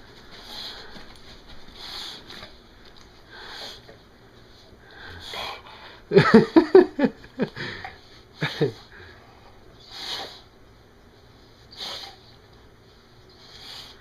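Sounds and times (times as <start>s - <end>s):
dog breathing hard and sniffing: 0.0s - 2.6s, 3.2s - 5.8s, 13.3s - 14.0s.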